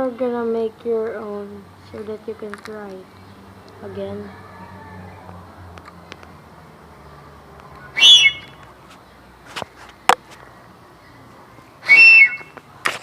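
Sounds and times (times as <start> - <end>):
shrill homemade horn blasts: 8.0 - 8.6, 11.8 - 12.6.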